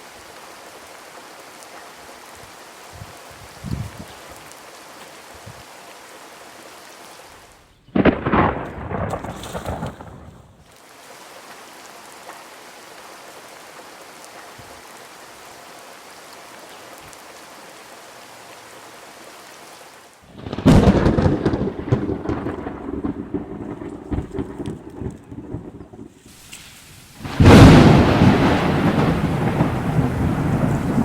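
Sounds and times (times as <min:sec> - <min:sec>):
rain hiss: 0:00.0 - 0:31.0
thunder rumbling: 0:07.9 - 0:10.6, 0:20.3 - 0:26.2, 0:27.2 - 0:31.0.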